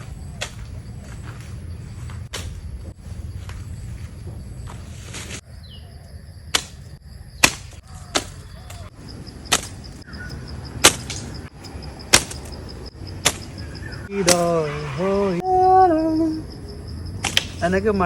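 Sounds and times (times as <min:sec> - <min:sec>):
faint pulsing high tone: 0:13.6 - 0:17.0
seeds snapping when launched: 0:17.2 - 0:17.6.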